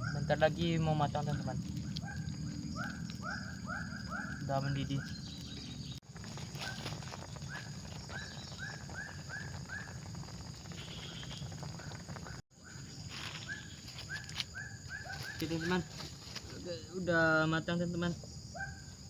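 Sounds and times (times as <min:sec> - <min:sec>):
animal chirping: 0:00.0 - 0:06.0, 0:06.6 - 0:16.0
low background rumble: 0:00.0 - 0:12.4.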